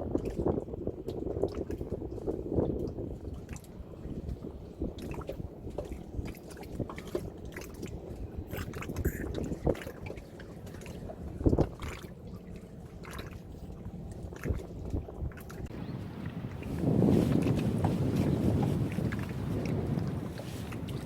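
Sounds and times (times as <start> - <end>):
water splashing and dripping: 5.0 - 21.0.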